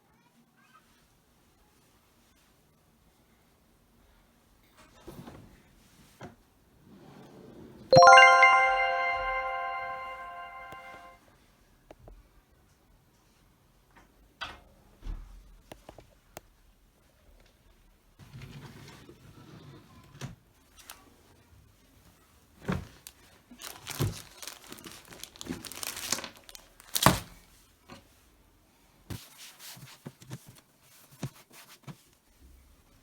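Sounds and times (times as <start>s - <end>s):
items crinkling and rustling: 22.8s - 27.4s.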